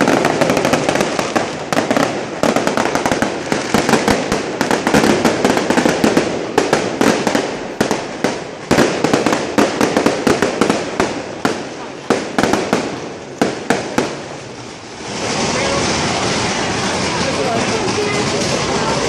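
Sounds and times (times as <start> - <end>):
firecrackers banging: 0.0 - 19.0.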